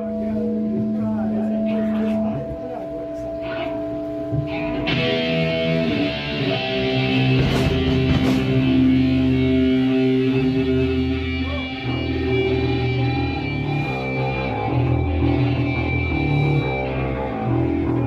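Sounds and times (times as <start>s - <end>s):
bass guitar chords: 0.0s - 18.0s
electric guitar chords: 0.0s - 18.0s.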